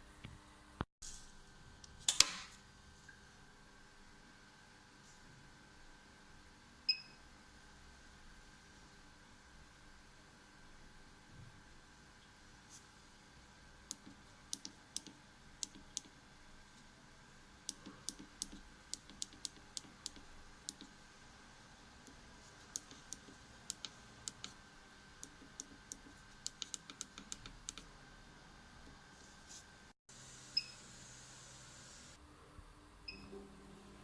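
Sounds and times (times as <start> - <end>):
control panel keys clicking: 17.7 - 20.9, 22.7 - 24.6, 25.2 - 27.8.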